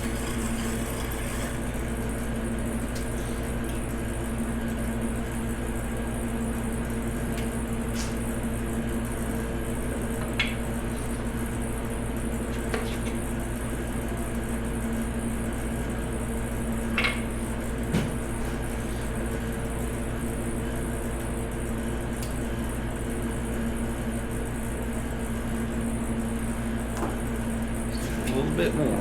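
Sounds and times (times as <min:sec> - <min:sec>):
grinder motor humming: 0:00.0 - 0:03.9.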